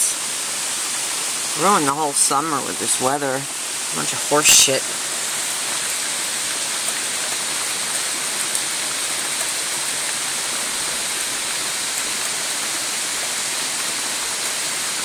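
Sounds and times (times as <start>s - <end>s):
steady rain falling: 0.0s - 15.0s
rain drop ticks: 6.8s - 11.3s.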